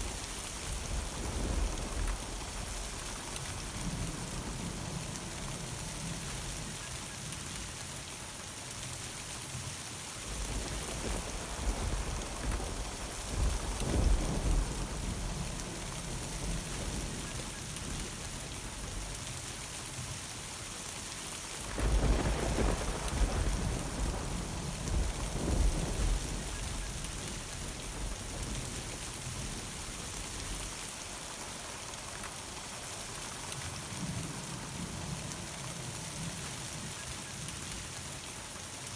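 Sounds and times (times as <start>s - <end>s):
steady rain: 0.0s - 38.9s
thunder rolling: 10.3s - 19.1s, 21.6s - 30.7s.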